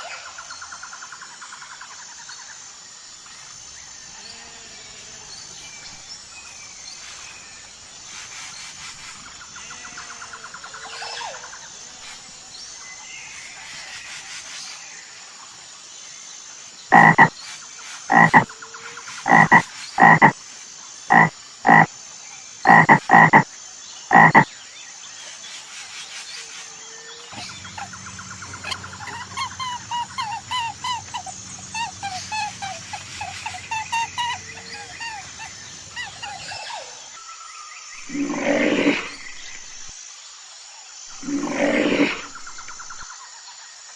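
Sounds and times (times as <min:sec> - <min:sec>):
animal calling: 0:16.9 - 0:17.3, 0:18.1 - 0:18.5, 0:19.3 - 0:20.3, 0:21.1 - 0:21.9, 0:22.7 - 0:23.4, 0:24.1 - 0:24.4, 0:27.3 - 0:37.0.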